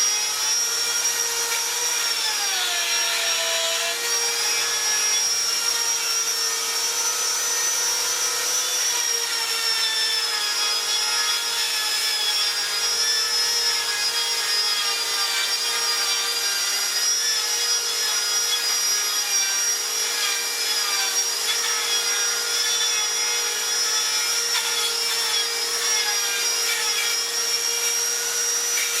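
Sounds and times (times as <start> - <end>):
power tool motor whine: 0.0 - 29.0
wood cutting rasp: 0.0 - 29.0.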